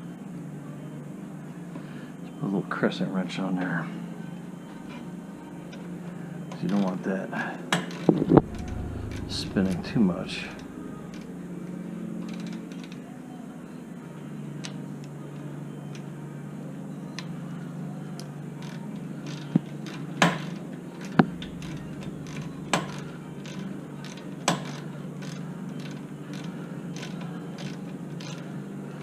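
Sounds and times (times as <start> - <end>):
steady low hum: 8.0 - 12.7, 20.6 - 29.0.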